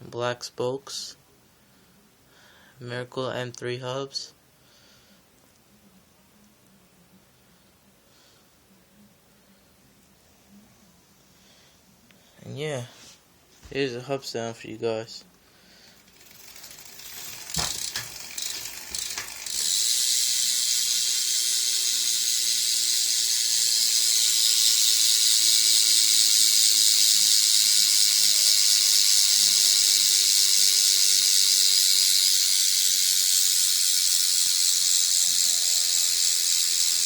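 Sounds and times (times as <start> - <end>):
bicycle hub ratcheting clicks: 15.8 - 37.0.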